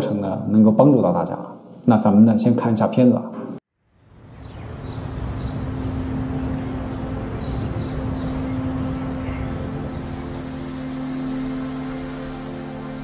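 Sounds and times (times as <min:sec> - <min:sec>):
vehicle low hum: 0:03.8 - 0:13.0.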